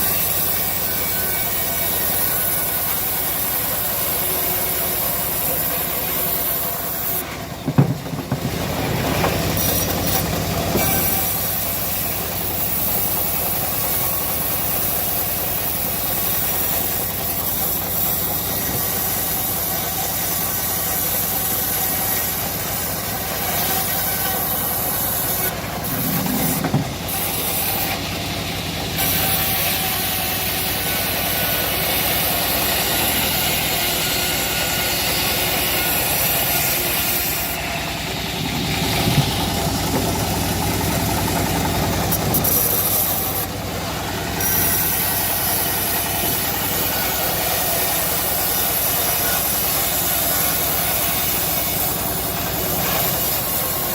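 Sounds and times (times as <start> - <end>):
bandsaw cutting a log: 0.0 - 53.9
sharp knocks: 7.6 - 10.1, 25.8 - 27.2.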